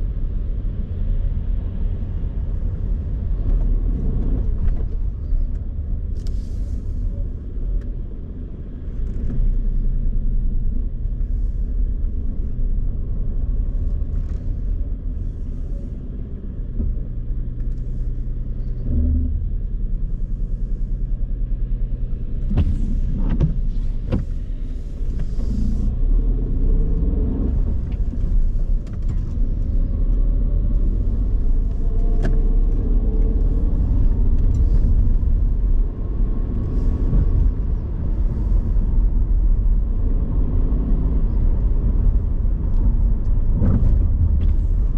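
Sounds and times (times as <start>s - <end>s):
car engine and road rumble: 0.0s - 44.9s.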